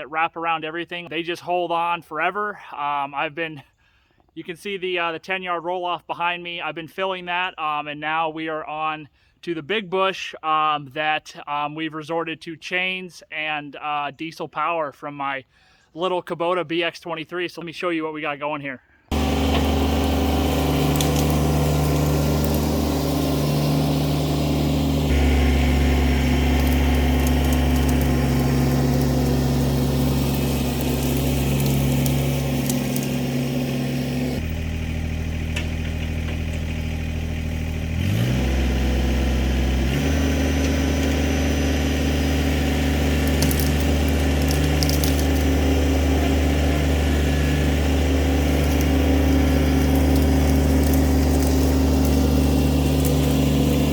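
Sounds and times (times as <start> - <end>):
tractor diesel engine running: 19.1 - 53.9.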